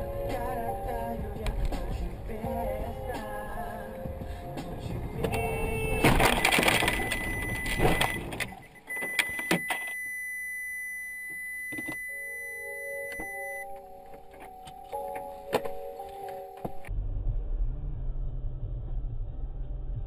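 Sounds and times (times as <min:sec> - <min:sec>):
car driving noise: 0:00.0 - 0:09.8
held electronic notes: 0:00.0 - 0:16.9
high electronic tone: 0:05.3 - 0:16.9.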